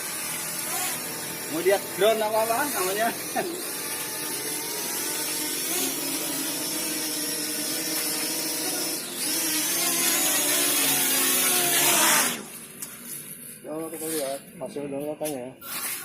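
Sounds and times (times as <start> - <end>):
drone propellers whirring: 0.0 - 12.7.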